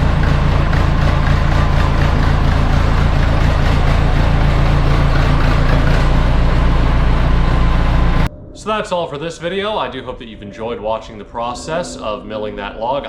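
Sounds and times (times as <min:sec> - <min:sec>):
heavy engine running: 0:00.0 - 0:08.3.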